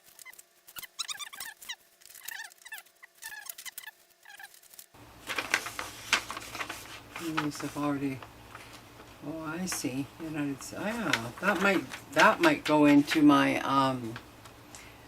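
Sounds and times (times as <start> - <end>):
paper pages rustling: 0.0 - 14.3
small animal squeaky chirps: 0.2 - 4.6.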